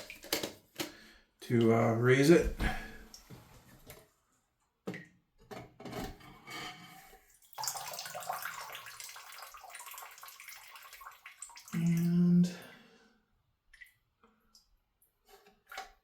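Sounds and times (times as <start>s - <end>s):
water trickling: 7.4s - 12.6s.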